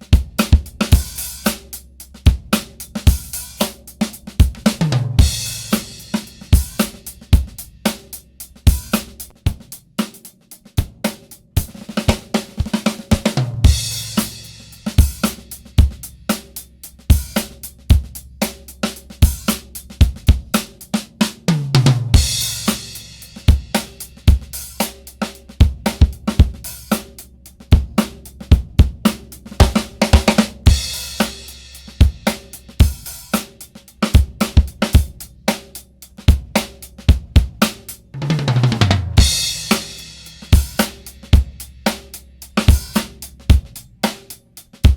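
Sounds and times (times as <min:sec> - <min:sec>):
drum kit groove: 0:00.0 - 0:44.9
drum fills falling in pitch: 0:00.1 - 0:10.1, 0:10.8 - 0:44.9
cymbal crashes: 0:00.5 - 0:09.2, 0:22.0 - 0:25.2, 0:39.1 - 0:43.3.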